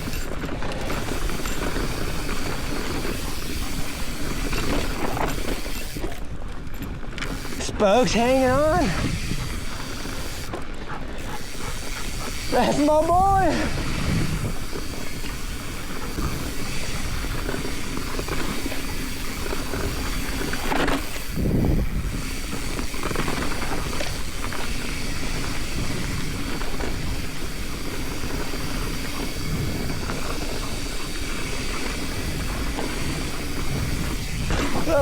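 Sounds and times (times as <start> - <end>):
bike rattling: 0.0 - 35.0
bike tyre noise: 0.0 - 35.0
wind rushing on microphone: 7.0 - 10.6, 11.2 - 35.0.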